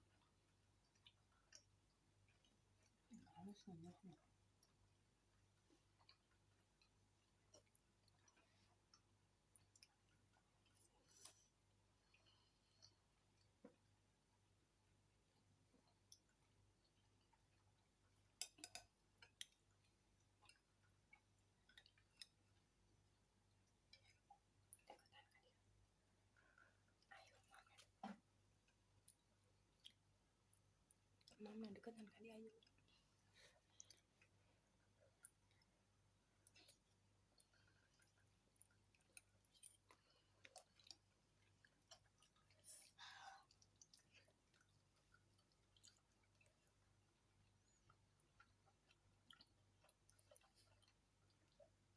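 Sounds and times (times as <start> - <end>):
person chewing: 20.4 - 22.6, 32.6 - 35.7, 36.4 - 42.9, 43.5 - 51.9
faint eating crunches: 32.6 - 51.9.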